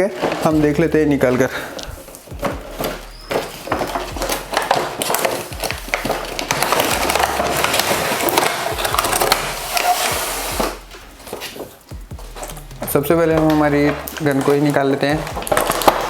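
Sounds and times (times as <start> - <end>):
cardboard packaging being opened: 0.0 - 16.0
clicks and scrapes: 1.2 - 16.0.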